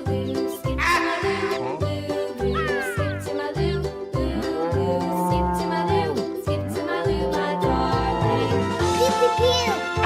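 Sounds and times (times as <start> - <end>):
upbeat background music: 0.0 - 10.0
pulsing bass line: 2.5 - 9.0.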